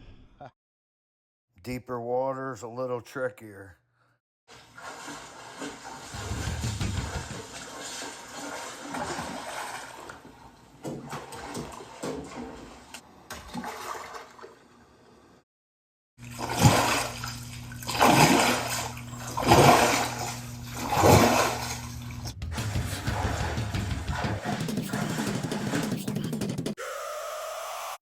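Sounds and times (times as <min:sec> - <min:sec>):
water sloshing and rushing: 0:04.5 - 0:14.8, 0:16.2 - 0:25.9
low hum: 0:06.2 - 0:07.6.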